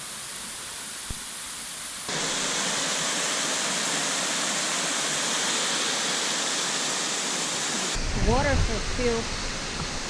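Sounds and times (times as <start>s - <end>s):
waterfall rushing: 2.1s - 10.0s.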